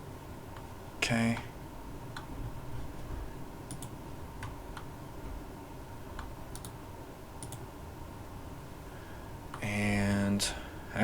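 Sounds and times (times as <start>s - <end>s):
low background hum: 0.0s - 11.0s
computer mouse clicks: 3.7s - 4.9s, 6.1s - 6.8s, 7.4s - 7.6s.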